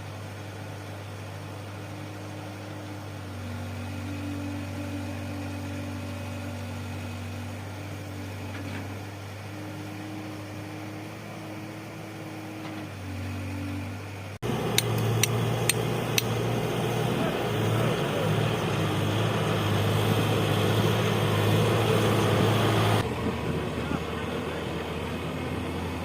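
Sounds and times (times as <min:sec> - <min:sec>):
heavy machinery engine idling: 0:00.0 - 0:26.0.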